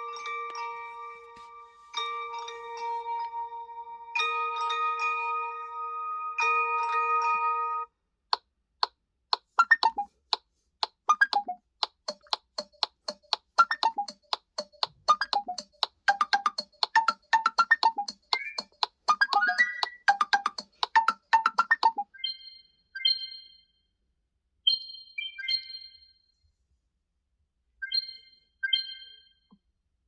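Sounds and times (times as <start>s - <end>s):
chiming ringtone: 0.0s - 7.9s, 16.1s - 23.8s, 24.7s - 26.2s, 27.8s - 29.4s
plucked note ringtone: 0.0s - 7.9s.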